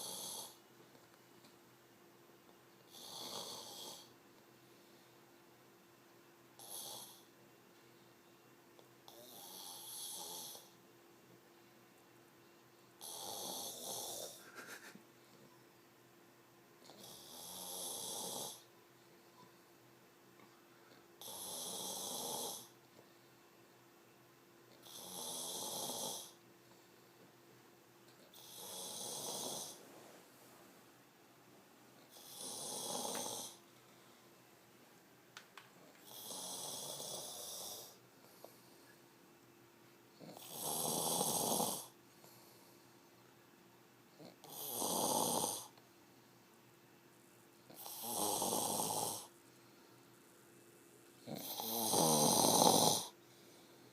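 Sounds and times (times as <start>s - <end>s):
person snoring heavily: 0.0s - 0.6s, 2.9s - 4.1s, 13.0s - 14.8s, 21.2s - 22.7s, 24.8s - 26.4s, 28.3s - 29.8s, 32.1s - 33.6s, 36.1s - 38.0s, 40.2s - 41.9s, 44.2s - 45.7s, 47.7s - 49.3s, 51.2s - 53.2s.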